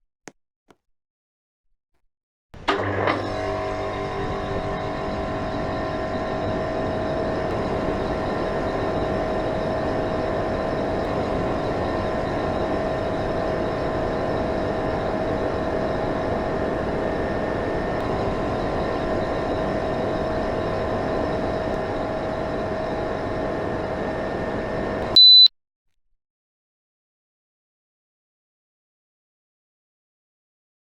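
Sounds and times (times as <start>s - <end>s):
air conditioner fan humming: 2.6s - 25.4s
short high beep: 25.1s - 25.5s.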